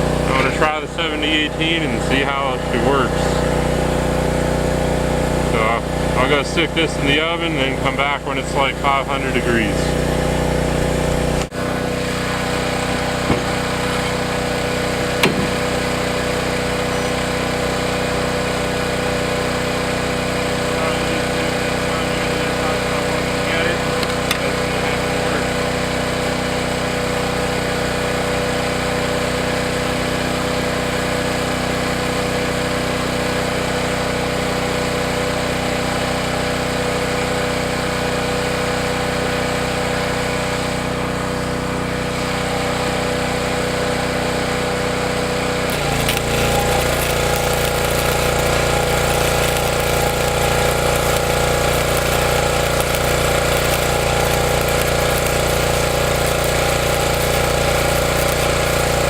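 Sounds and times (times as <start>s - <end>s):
machine humming: 44.6s - 59.0s.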